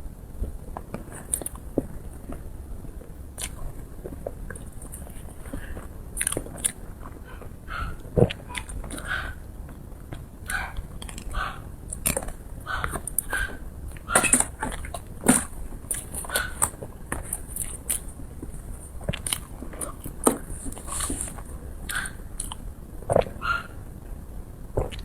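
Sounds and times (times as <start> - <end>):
mouth clicks and smacks: 3.4 - 3.6, 6.2 - 9.3, 19.0 - 23.7, 24.8 - 25.0
person chewing and biting food: 3.4 - 3.6, 4.2 - 7.2, 19.0 - 23.4, 24.8 - 25.0.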